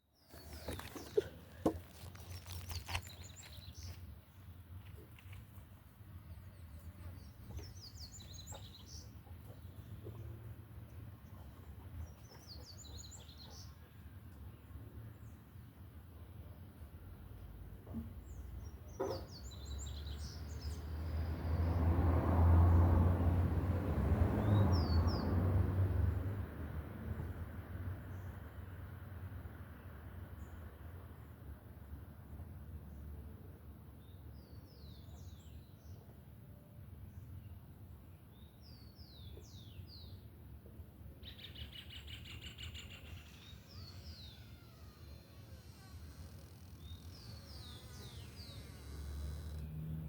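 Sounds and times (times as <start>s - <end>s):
birds chirping: 41.2s - 49.9s.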